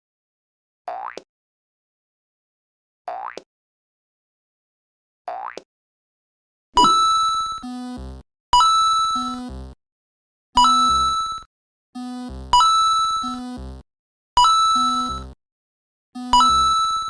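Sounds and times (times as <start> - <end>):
bright electronic ding: 6.8 - 7.6.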